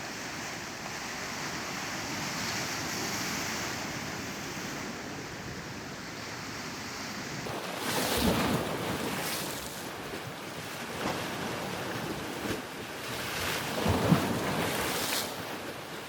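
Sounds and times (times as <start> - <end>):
ocean surf breaking: 7.5 - 10.0.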